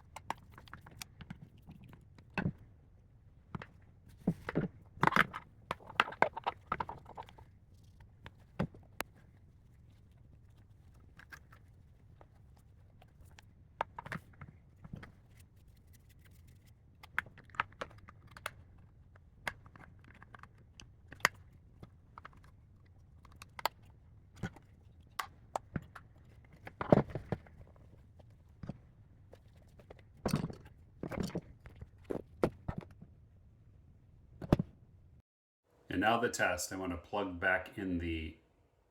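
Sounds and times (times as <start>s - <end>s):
plastic parts clicking and knocking: 3.5s - 9.2s, 17.0s - 28.8s
plastic clatter: 3.6s - 9.2s.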